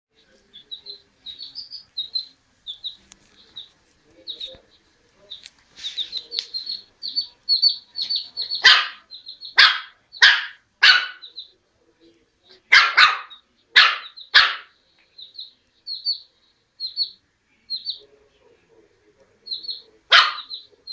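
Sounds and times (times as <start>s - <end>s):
chicken peeping: 0.2s - 20.9s
puppy yapping: 8.6s - 11.3s, 12.7s - 14.7s, 20.1s - 20.6s.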